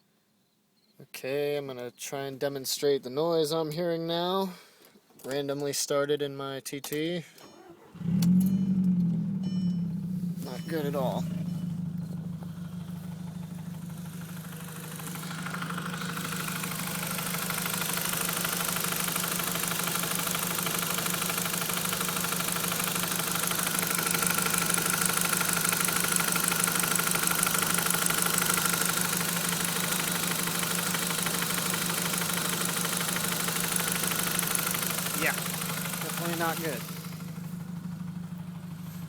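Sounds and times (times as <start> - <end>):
car engine running: 7.6 - 39.0
fast ticking engine knock: 10.4 - 39.0.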